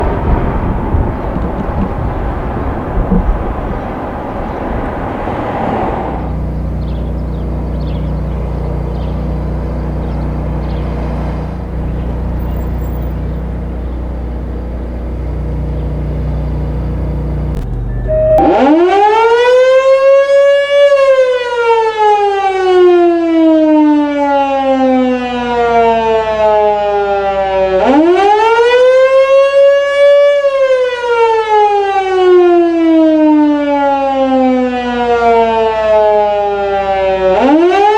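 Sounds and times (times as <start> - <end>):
steady low rumble: 0.0 - 18.6
fire siren wailing: 0.0 - 37.9.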